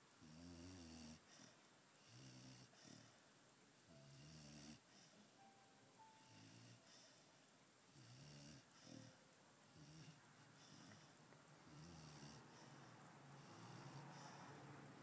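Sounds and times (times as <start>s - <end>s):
puppy snoring softly: 0.2s - 3.2s, 6.1s - 15.0s.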